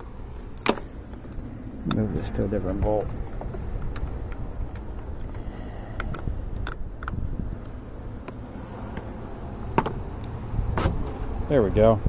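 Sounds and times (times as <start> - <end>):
low steady rumble: 0.0 - 12.0
sharp metallic clicks: 3.0 - 9.1.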